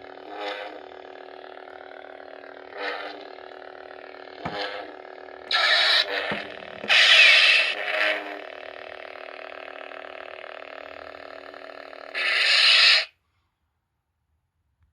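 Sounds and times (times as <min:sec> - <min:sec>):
toy lightsaber blade hum: 0:00.0 - 0:13.1
lightsaber effect bursts: 0:04.6 - 0:09.2, 0:12.1 - 0:13.1.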